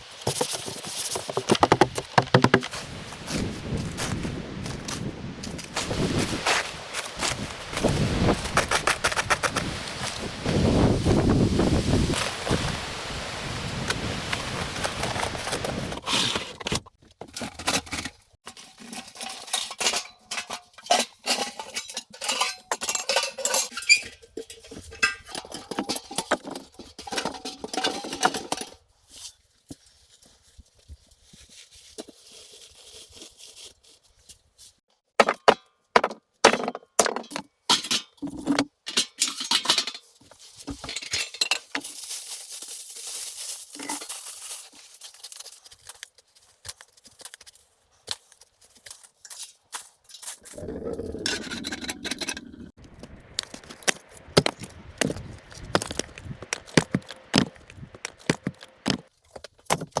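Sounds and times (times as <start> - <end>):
rustling and scraping: 0.0 - 35.0, 39.2 - 60.0
hard objects knocking and scraping: 0.2 - 4.9, 50.6 - 60.0.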